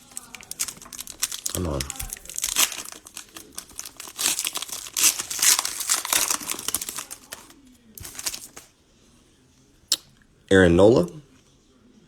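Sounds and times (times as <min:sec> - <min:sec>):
cellophane wrapper crinkling: 0:00.0 - 0:08.7
faint rustles and clicks: 0:00.0 - 0:08.7.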